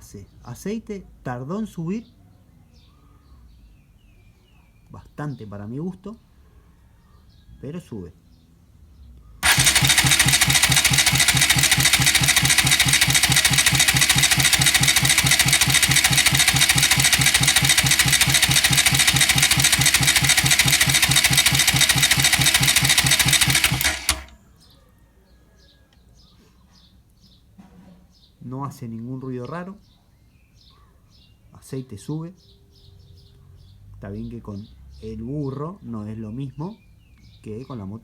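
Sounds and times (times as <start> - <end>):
engine cranking on starter: 9.4 - 24.4.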